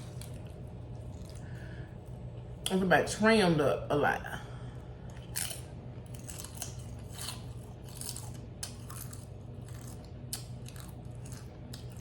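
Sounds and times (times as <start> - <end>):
low hum: 0.0 - 12.0
crunchy chewing: 5.1 - 12.0.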